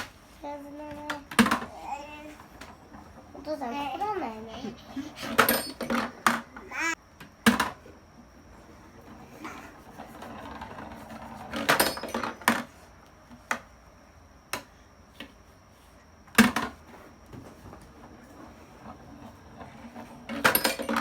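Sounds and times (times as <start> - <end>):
soft rolling rattle: 0.6 - 6.5, 8.4 - 12.9, 16.6 - 21.0.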